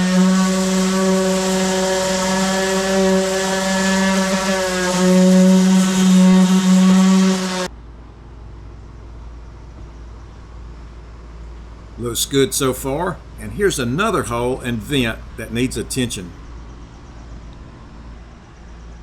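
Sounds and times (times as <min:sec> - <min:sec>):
orbital sander buzzing: 0:00.0 - 0:07.7
faint low hum: 0:00.0 - 0:19.0.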